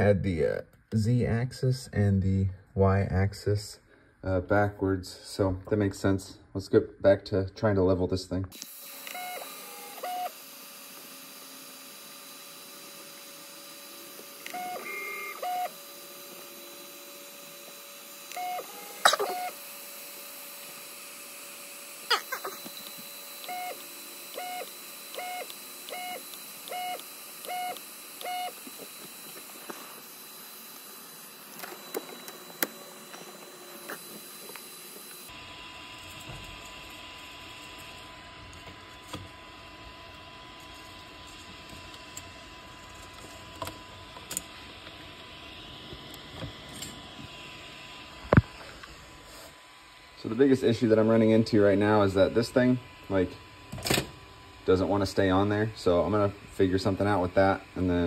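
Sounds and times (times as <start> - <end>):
printer electronic beeps: 9.0 - 10.4, 14.4 - 15.8, 18.3 - 19.6, 22.8 - 28.6.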